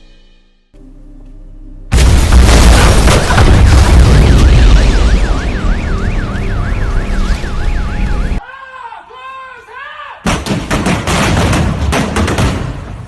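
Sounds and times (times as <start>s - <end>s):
deep rumbling boom: 1.9s - 7.4s
siren warbling: 3.8s - 8.4s.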